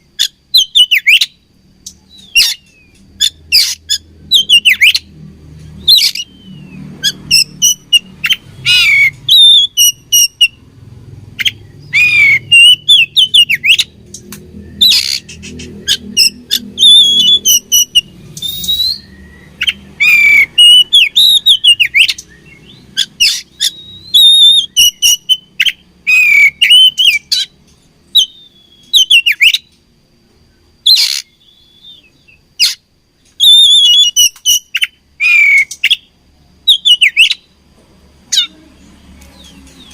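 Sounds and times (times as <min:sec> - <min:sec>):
bird singing sharp whistled notes: 0:00.6 - 0:01.4, 0:05.8 - 0:10.6, 0:11.4 - 0:27.5, 0:28.1 - 0:29.7, 0:30.9 - 0:32.8, 0:33.4 - 0:36.1, 0:36.7 - 0:37.4.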